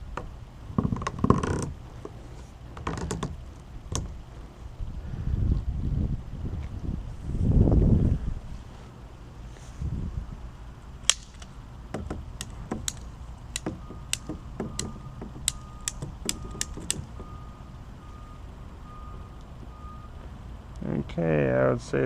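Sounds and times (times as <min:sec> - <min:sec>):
plastic pipe fittings clicking: 0:11.1 - 0:17.2
faint repeating beep: 0:17.2 - 0:20.1.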